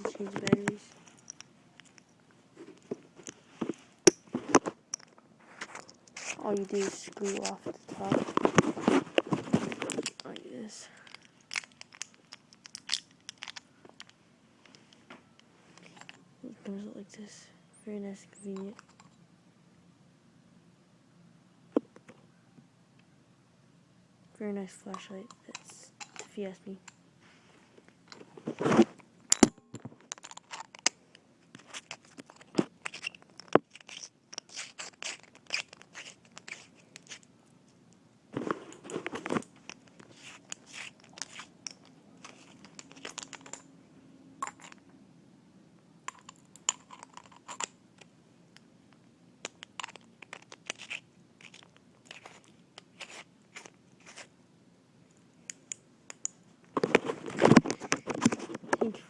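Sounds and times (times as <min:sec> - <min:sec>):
flashlight handling clicks and scrapes: 0:00.2 - 0:10.4, 0:11.0 - 0:14.9, 0:15.8 - 0:16.2, 0:25.0 - 0:27.0, 0:30.1 - 0:37.3, 0:38.4 - 0:43.7, 0:46.1 - 0:47.7, 0:49.4 - 0:54.3.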